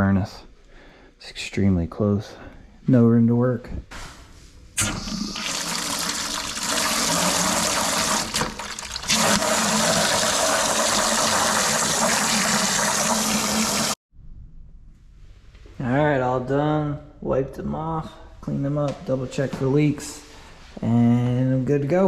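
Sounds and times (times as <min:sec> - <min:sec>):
water running from tap: 0:04.8 - 0:14.0.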